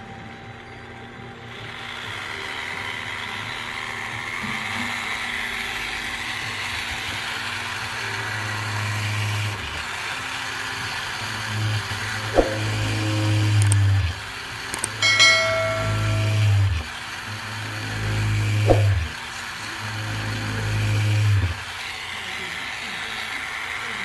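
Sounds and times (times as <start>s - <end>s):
small motor humming: 0.0s - 24.0s
sharp click: 13.6s - 13.8s, 14.7s - 16.5s.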